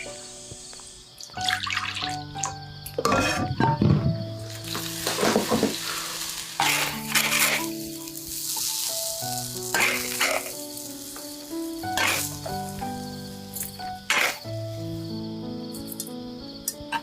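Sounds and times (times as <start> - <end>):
background music of held notes: 0.0 - 17.0
food sizzling in a pan: 4.4 - 14.5.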